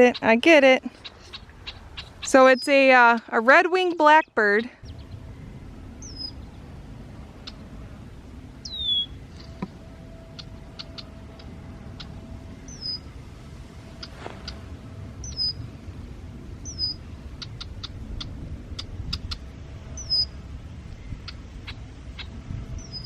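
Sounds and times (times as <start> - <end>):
bird chip notes: 1.0 - 15.8
bird down-slurred whistle: 8.6 - 13.1, 14.0 - 15.6.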